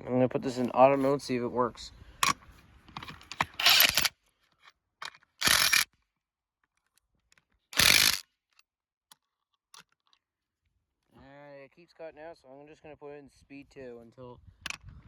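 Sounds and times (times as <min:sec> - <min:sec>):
impact wrench hammering lug nuts: 0:05.4 - 0:05.8, 0:07.8 - 0:08.2.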